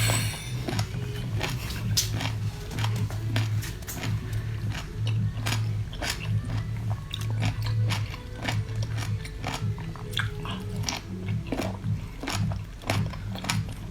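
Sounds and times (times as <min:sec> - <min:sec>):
low hum: 0:00.0 - 0:12.1
person chewing: 0:01.4 - 0:13.9.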